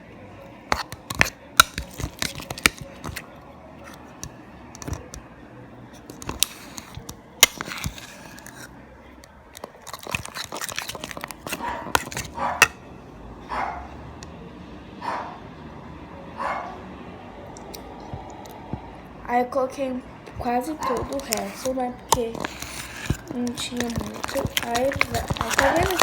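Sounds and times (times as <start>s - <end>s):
utensil clicking and scraping cup: 0.7s - 3.2s, 3.9s - 5.2s, 6.0s - 8.7s, 9.6s - 12.8s, 20.3s - 26.0s
dog barking: 11.6s - 12.7s, 13.5s - 13.9s, 15.0s - 15.4s, 16.4s - 16.8s.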